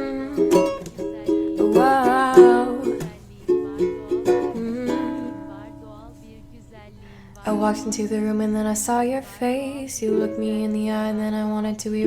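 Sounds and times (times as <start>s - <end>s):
plucked ukulele notes: 0.0s - 6.6s.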